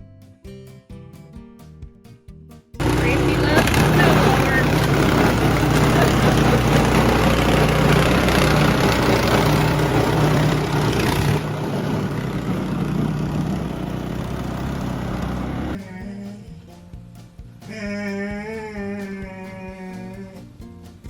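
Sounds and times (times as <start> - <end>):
motor running with low hum: 2.8 - 15.8.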